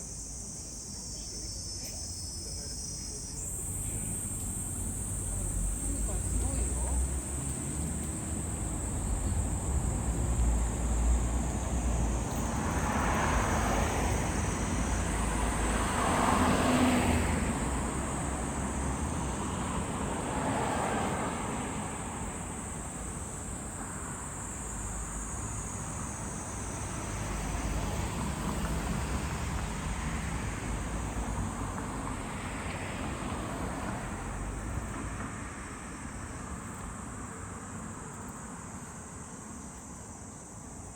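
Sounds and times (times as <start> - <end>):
insects droning: 0.0 - 40.9
road traffic passing: 0.0 - 40.9.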